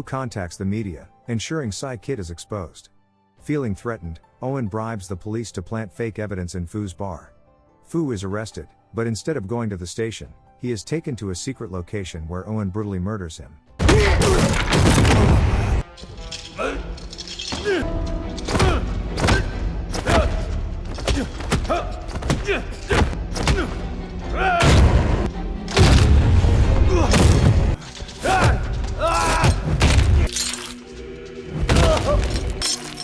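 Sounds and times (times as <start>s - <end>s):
film music: 13.5s - 33.0s
pained grunts and cries: 16.5s - 25.0s
heavy blows thudding and crashing: 18.4s - 23.8s, 24.6s - 30.3s.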